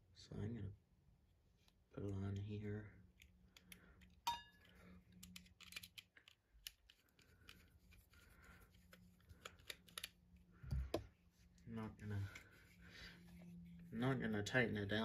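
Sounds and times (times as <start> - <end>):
small metal parts clicking and scraping: 5.2 - 7.6.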